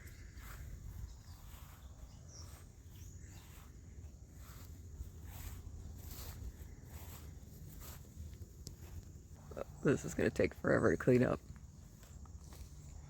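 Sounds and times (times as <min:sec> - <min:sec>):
soft rustles: 0:00.0 - 0:10.3
steady low rumble: 0:00.0 - 0:13.0.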